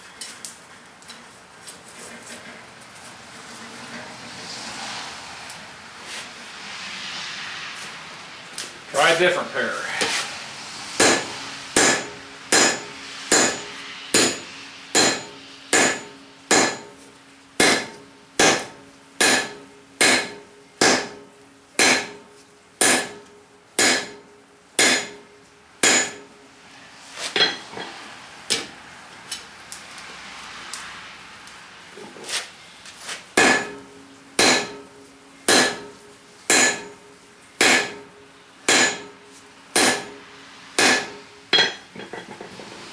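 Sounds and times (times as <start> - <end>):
anvil ringing: 11.0 - 17.0, 17.6 - 21.2, 21.8 - 22.2, 22.8 - 23.2, 23.8 - 26.4, 27.4 - 27.9, 33.4 - 40.2, 40.8 - 42.3
hammer striking metal on anvil: 11.0 - 17.0, 17.6 - 26.4, 27.4 - 27.9, 33.4 - 42.4.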